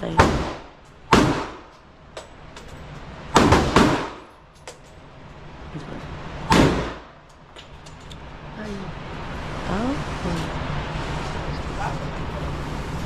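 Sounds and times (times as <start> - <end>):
gunshots with echo: 0.2 - 1.7, 3.4 - 4.2, 6.5 - 7.1.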